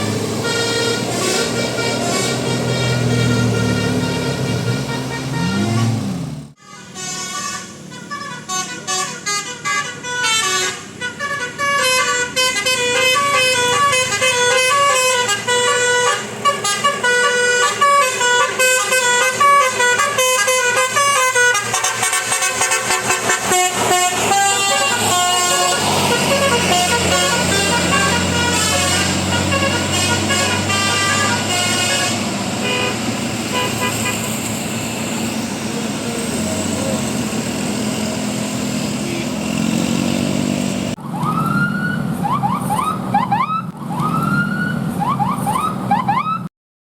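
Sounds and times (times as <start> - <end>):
vehicle noise: 0.0 - 46.5
air horn melody: 0.4 - 34.4.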